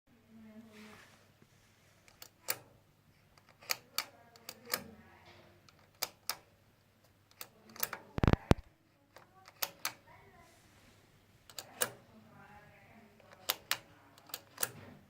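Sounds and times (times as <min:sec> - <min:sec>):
sharp clicks and knocks: 0:02.1 - 0:02.7, 0:03.4 - 0:10.0, 0:13.2 - 0:15.0.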